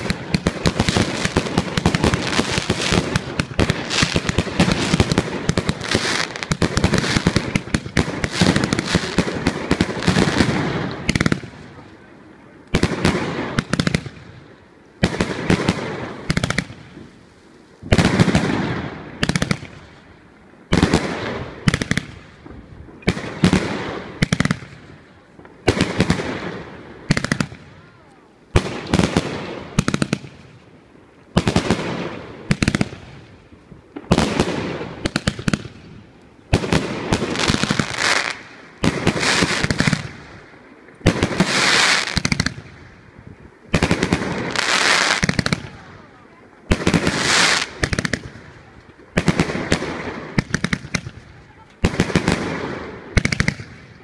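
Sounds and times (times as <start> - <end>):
fireworks launch thumps and bursts: 41.0 - 42.7.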